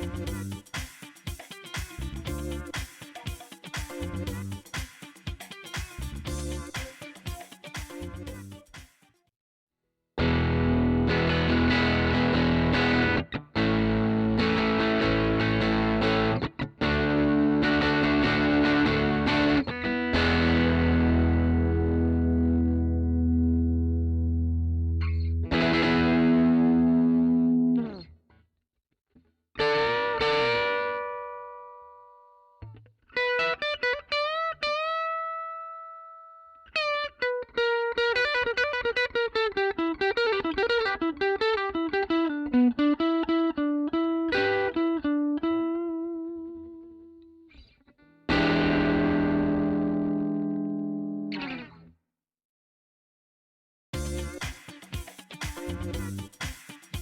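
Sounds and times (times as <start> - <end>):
distorted electric guitar: 0.0 - 8.8, 10.2 - 28.1, 29.6 - 32.0, 44.3 - 45.1, 48.3 - 51.9, 54.0 - 57.0.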